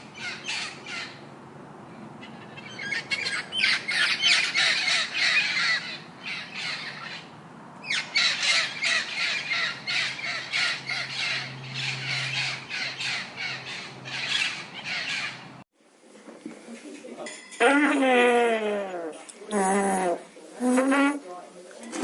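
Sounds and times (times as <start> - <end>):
flock of birds calling: 0.0 - 1.2, 2.1 - 15.6.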